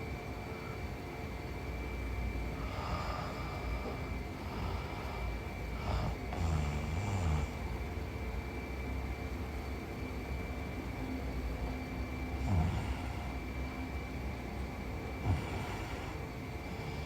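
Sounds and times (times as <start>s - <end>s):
steady background hum: 0.0s - 17.0s
woman breathing: 2.5s - 7.7s, 12.3s - 13.6s, 15.2s - 17.0s
woman snoring: 4.4s - 7.6s, 12.4s - 13.4s, 15.2s - 17.0s.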